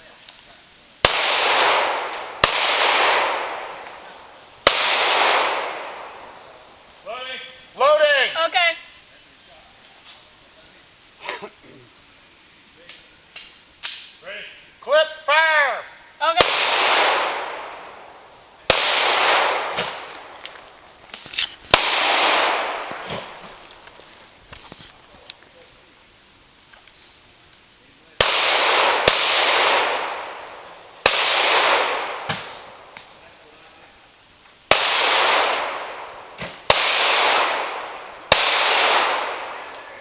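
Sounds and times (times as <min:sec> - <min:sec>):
pistol shot echoing: 0:01.0 - 0:06.6, 0:16.4 - 0:18.1, 0:18.7 - 0:20.6, 0:21.7 - 0:23.4, 0:28.2 - 0:32.9, 0:34.7 - 0:40.0.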